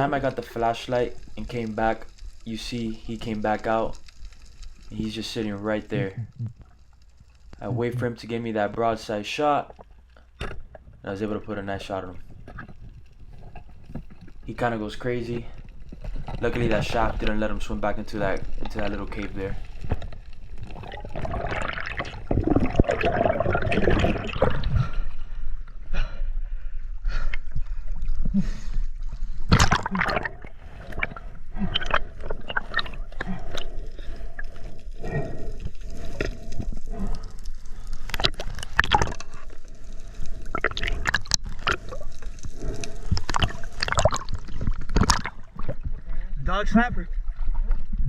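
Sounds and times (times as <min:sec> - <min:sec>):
water gurgling and sloshing: 0:09.7 - 0:48.0.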